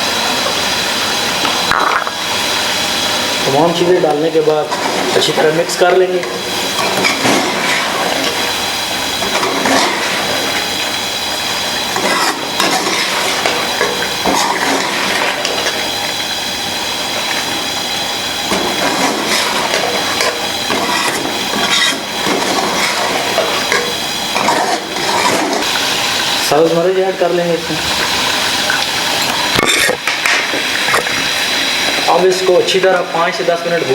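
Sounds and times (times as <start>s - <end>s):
food frying: 0.0s - 33.9s
spoon scraping a cooking pot: 11.9s - 15.9s, 18.4s - 25.6s.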